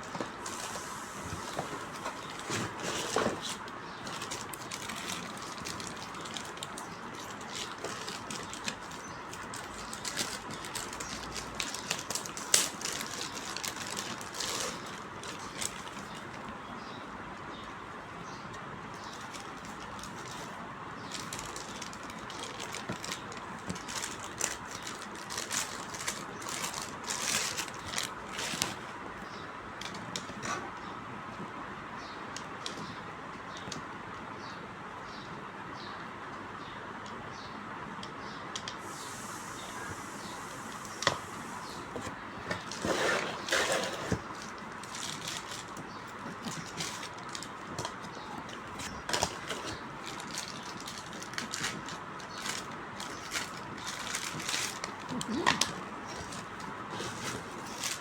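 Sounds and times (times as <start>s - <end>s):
packaging and parts rustling: 0.0s - 16.5s, 18.9s - 29.0s, 41.6s - 58.0s
steady background hiss: 0.0s - 58.0s.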